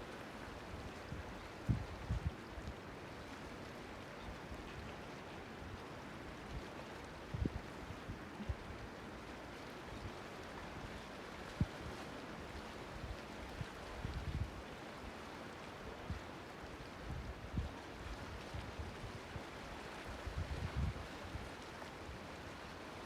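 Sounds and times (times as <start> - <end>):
wind buffeting the microphone: 1.1 - 2.4, 7.3 - 8.8, 13.6 - 14.6, 20.2 - 21.5.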